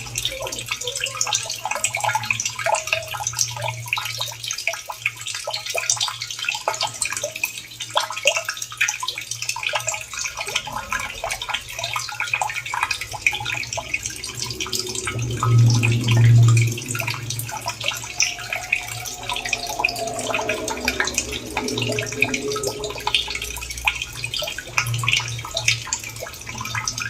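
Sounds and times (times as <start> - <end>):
water trickling and splashing: 0.0 - 27.0
low steady hum: 13.0 - 25.3.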